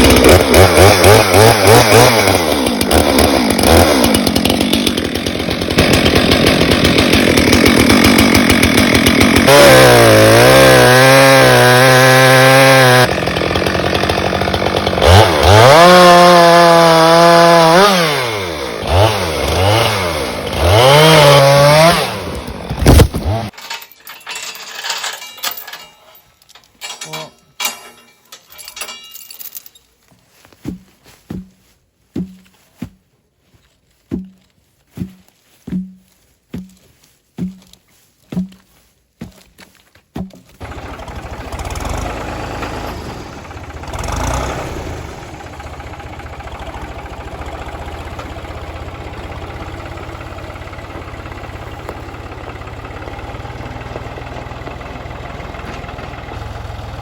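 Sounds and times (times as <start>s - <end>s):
tractor engine idling: 13.0s - 15.6s, 40.6s - 57.0s.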